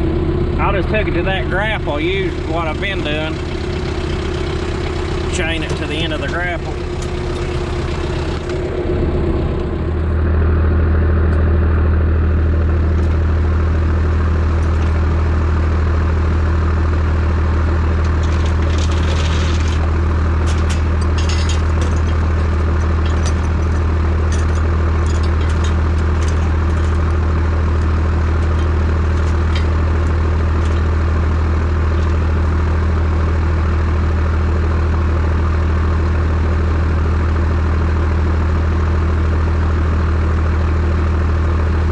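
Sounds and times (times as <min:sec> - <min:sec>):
tractor diesel engine running: 0:00.0 - 0:41.9
faint clinks: 0:18.1 - 0:31.0.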